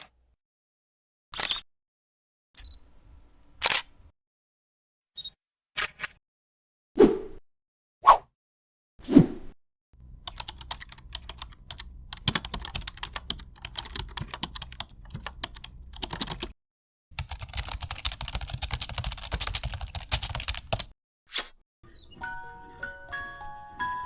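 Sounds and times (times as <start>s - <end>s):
typing on computer keyboard: 10.0s - 16.5s, 17.2s - 20.9s.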